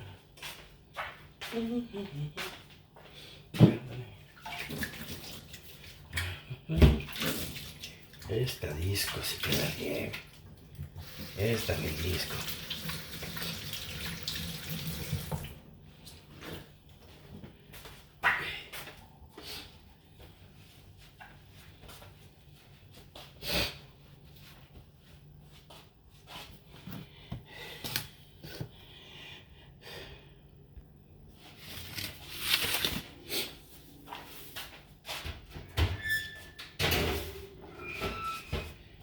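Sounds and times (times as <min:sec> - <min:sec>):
rustling noise: 0:31.3 - 0:35.5.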